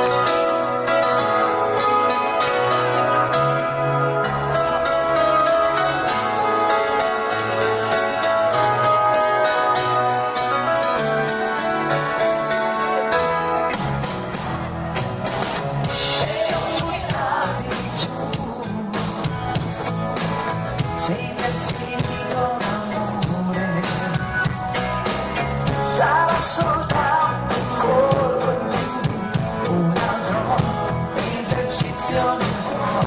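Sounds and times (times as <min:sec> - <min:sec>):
live band playing pop-rock: 0:00.0 - 0:33.0
woman singing: 0:16.1 - 0:18.9.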